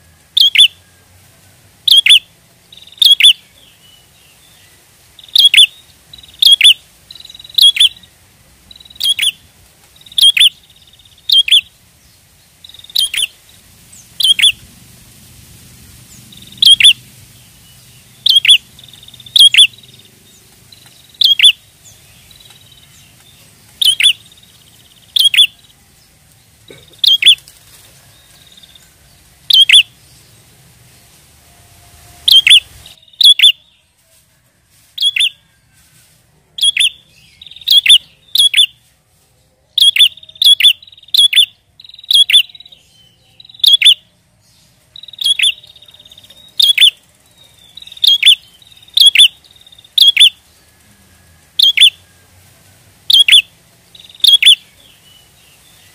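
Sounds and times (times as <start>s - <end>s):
bird sharp chirps: 0.4s - 0.8s, 1.9s - 8.1s, 8.7s - 9.4s, 10.0s - 11.7s, 12.6s - 13.4s, 14.0s - 14.6s, 16.1s - 25.7s, 26.8s - 27.5s, 29.5s - 30.2s, 32.3s - 33.8s, 35.0s - 35.4s, 36.6s - 38.8s, 39.8s - 44.0s, 45.0s - 50.6s, 51.6s - 52.2s, 53.1s - 55.9s.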